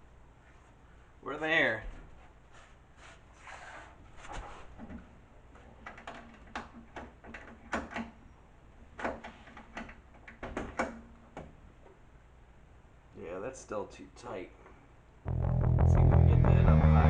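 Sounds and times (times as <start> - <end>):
clicks and knocks of car parts: 5.8 - 8.2, 9.0 - 12.0.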